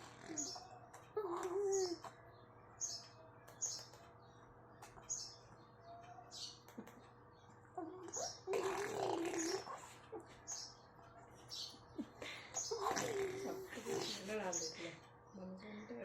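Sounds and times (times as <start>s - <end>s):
baby cooing: 1.2s - 2.1s, 7.8s - 9.9s, 12.7s - 14.2s.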